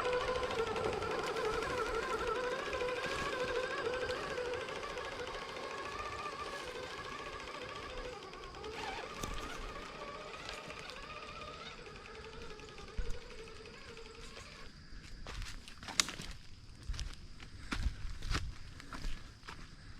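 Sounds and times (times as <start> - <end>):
electric motor whining: 0.0 - 14.8.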